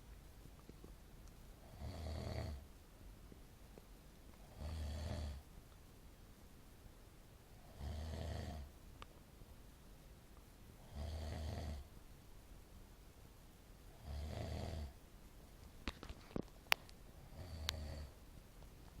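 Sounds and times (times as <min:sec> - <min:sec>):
pet snoring: 0:01.6 - 0:02.6, 0:04.4 - 0:05.4, 0:07.6 - 0:08.7, 0:10.8 - 0:11.9, 0:13.9 - 0:15.0, 0:17.2 - 0:18.2.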